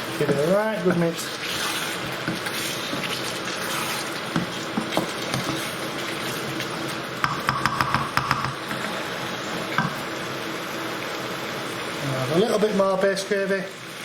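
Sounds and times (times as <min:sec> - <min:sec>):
food sizzling in a pan: 0:00.0 - 0:14.0
spoon scraping and clicking on pan: 0:04.3 - 0:05.7, 0:07.2 - 0:08.8, 0:09.8 - 0:10.0.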